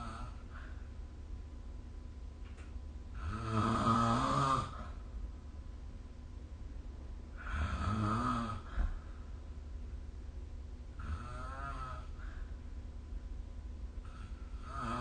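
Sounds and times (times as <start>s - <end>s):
person snoring: 0.0s - 0.6s, 3.1s - 5.0s, 7.4s - 8.8s, 11.0s - 12.4s, 14.0s - 15.0s.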